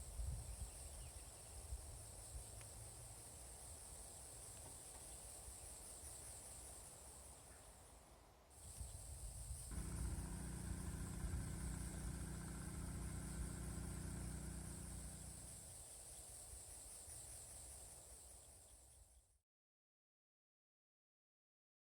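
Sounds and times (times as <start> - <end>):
high-pitched insect buzz: 8.6 - 18.7
low engine drone: 9.7 - 15.6.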